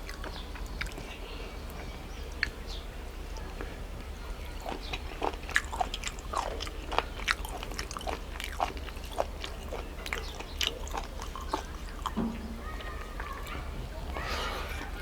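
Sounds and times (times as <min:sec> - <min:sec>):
person chewing food: 0:00.0 - 0:13.5.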